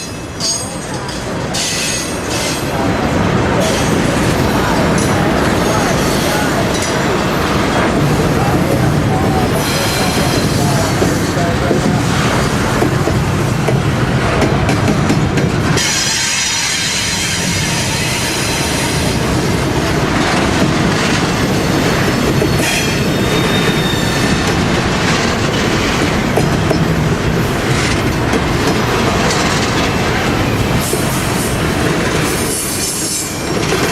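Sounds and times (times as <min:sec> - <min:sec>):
train wheels clattering on rails: 0:00.0 - 0:33.9
high-pitched wheel squeal: 0:22.5 - 0:24.4.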